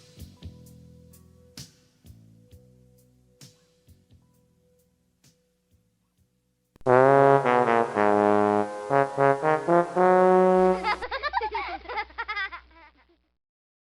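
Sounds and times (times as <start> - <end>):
brass-like music with warbling tail: 6.8 - 11.0.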